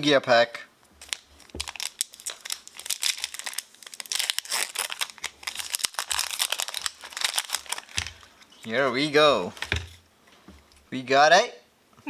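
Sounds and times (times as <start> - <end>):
foil wrapper crinkling and tearing: 1.0 - 9.7.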